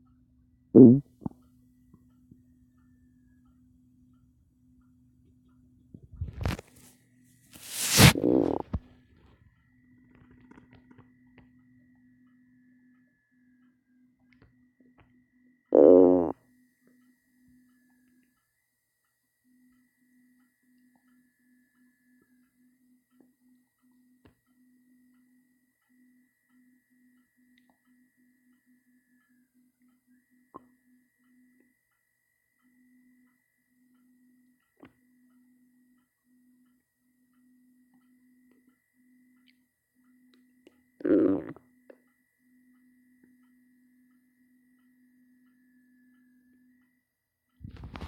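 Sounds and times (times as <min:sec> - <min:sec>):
faint steady electronic tone: 0:00.0 - 0:48.0
pulsing low hum: 0:06.0 - 0:06.6
stomach growling: 0:08.1 - 0:08.8, 0:15.8 - 0:16.4, 0:41.0 - 0:41.7.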